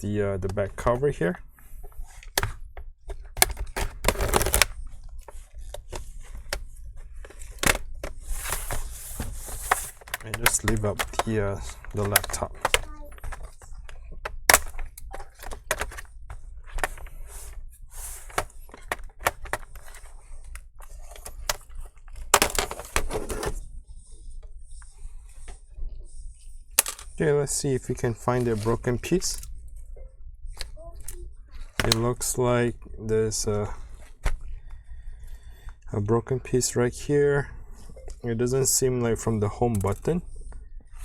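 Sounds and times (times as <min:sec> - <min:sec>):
plastic cover clicking and snapping: 0:03.3 - 0:04.8, 0:07.3 - 0:08.2, 0:09.7 - 0:13.6, 0:14.2 - 0:16.1, 0:22.4 - 0:23.5.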